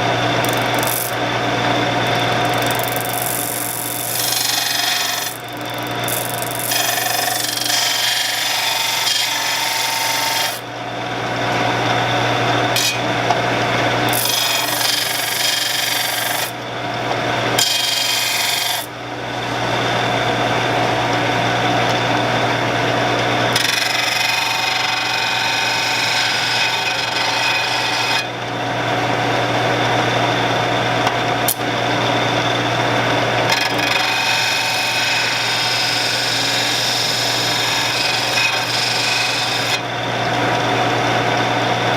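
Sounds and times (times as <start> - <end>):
blade grinding on abrasive: 0.0 - 10.6, 11.8 - 16.6, 17.6 - 18.9, 23.5 - 28.3, 33.5 - 39.8
motor running: 0.0 - 12.8, 13.5 - 25.4.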